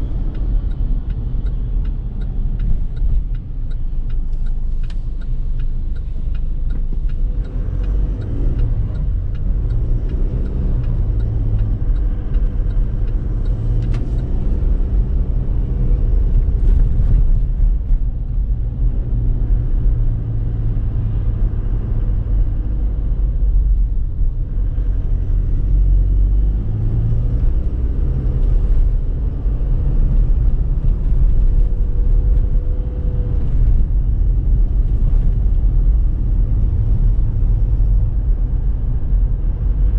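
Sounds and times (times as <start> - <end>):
diesel engine pulling on road: 0.0 - 39.9.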